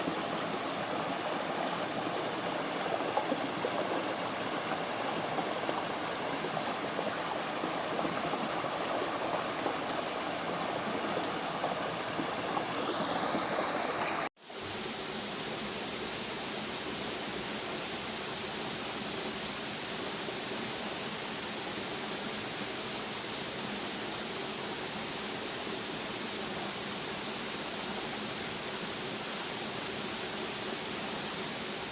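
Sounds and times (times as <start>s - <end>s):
waterfall rushing: 0.0s - 14.3s.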